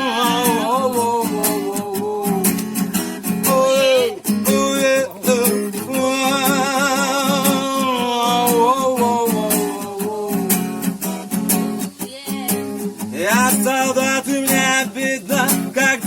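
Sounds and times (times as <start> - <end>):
acoustic guitar strumming: 0.0 - 16.0
person singing wordless melody: 0.0 - 16.0.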